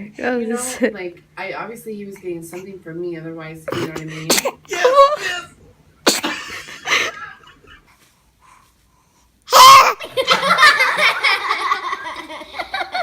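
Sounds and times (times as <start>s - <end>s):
baby sneezing: 3.7s - 4.9s, 6.0s - 6.7s, 9.5s - 10.0s
laughter: 6.4s - 7.8s, 10.0s - 13.0s.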